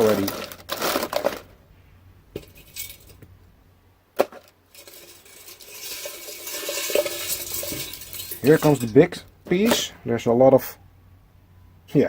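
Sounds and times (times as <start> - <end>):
wires rustling and scraping: 0.0 - 1.6, 2.3 - 3.3, 4.2 - 9.9
copper wire clinking in metal pot: 2.4 - 3.3, 4.7 - 9.3.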